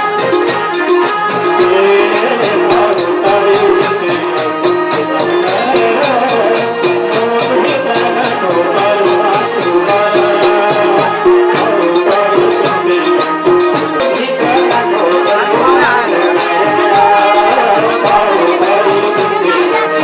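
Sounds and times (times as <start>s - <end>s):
jingling shaker percussion: 1.3s - 4.6s, 5.2s - 20.0s
sustained instrumental melody: 5.3s - 6.8s.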